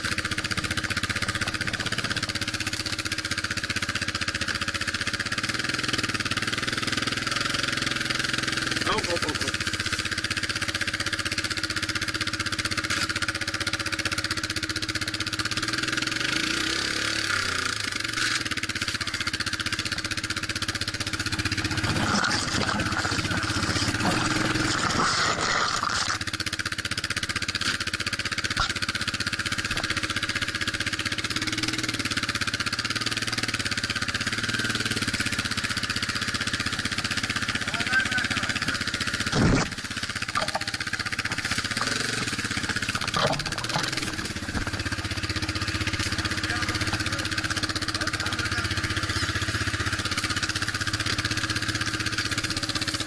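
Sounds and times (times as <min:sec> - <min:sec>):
off-road vehicle engine running: 0:00.0 - 0:53.0.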